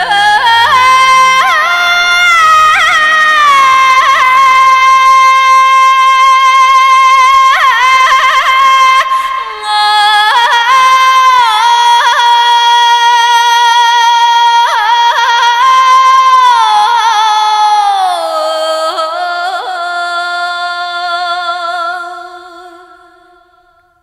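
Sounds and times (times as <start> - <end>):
high voice singing with yodel trills: 0.0 - 23.8.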